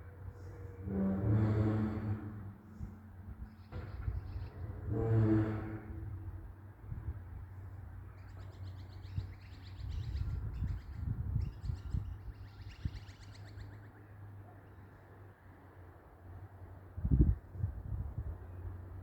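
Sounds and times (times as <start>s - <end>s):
small birds chirping: 8.2s - 14.0s.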